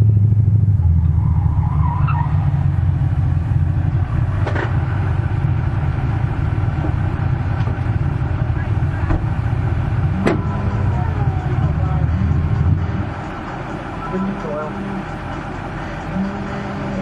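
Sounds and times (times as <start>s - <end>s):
car engine running: 0.0s - 17.0s
faint engine knock: 6.8s - 9.5s.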